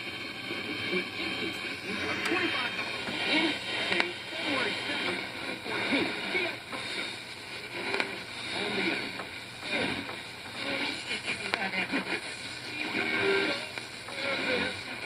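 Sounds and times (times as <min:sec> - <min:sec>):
radio hiss: 0:00.0 - 0:15.0
warbling voice-like radio tones: 0:00.7 - 0:06.7.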